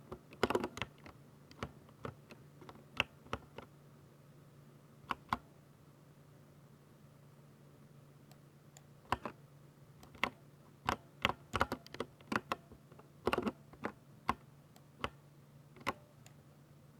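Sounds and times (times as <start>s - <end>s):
mechanical keyboard key presses: 0.1s - 3.7s, 10.0s - 12.6s, 13.2s - 14.4s, 15.8s - 16.1s.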